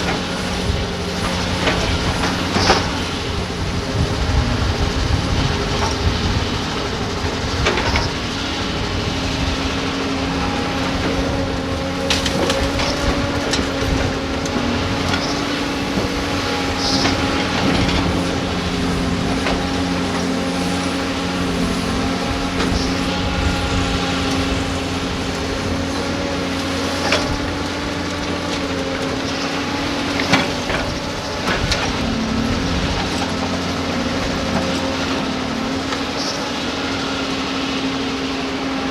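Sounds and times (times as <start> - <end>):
excavator diesel engines running: 0.0 - 38.9
clanks of digging rock: 1.2 - 3.2.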